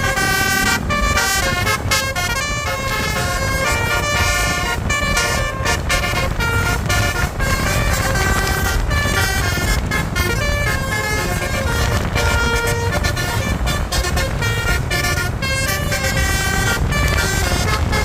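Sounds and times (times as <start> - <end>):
bus horn playing a melody: 0.0 - 18.0
low rumble of traffic: 0.0 - 18.0.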